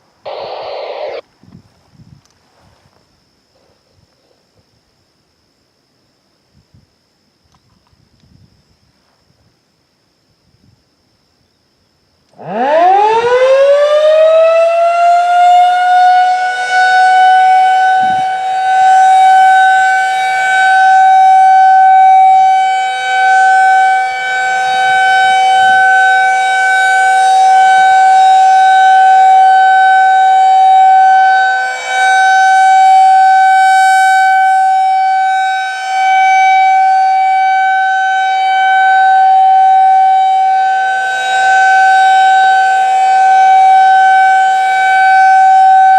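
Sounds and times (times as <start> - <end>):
rotating warning siren: 0.0 - 1.2, 12.3 - 45.9.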